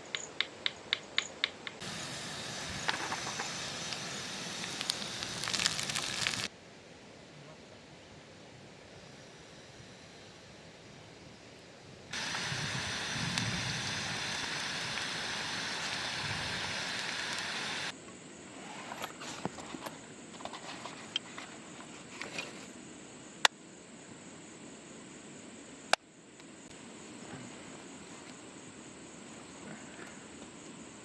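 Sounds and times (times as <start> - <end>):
outdoor background noise: 0.0 - 31.0
rushing falling water: 1.8 - 6.5, 12.2 - 17.9
small ticks: 4.6 - 6.5.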